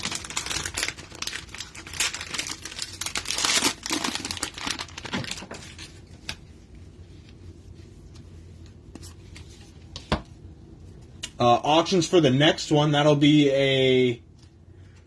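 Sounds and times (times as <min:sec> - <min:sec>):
cellophane wrapper crinkling and tearing: 0:00.0 - 0:06.4.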